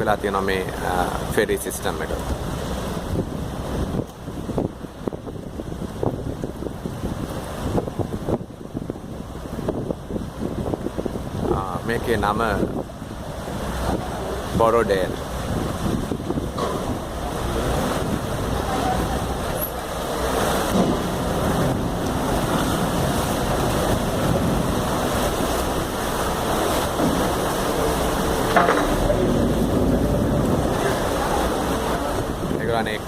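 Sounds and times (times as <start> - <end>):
wind buffeting microphone: 0.0 - 33.0
ferry engine: 12.6 - 32.6.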